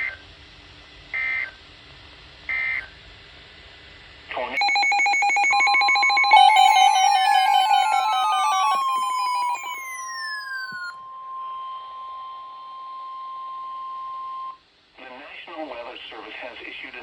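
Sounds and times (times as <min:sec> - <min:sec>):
digital data tone bursts: 0:04.6 - 0:11.0
rapid pulsing electronic beep: 0:04.6 - 0:11.0
steady high tone: 0:04.6 - 0:13.4.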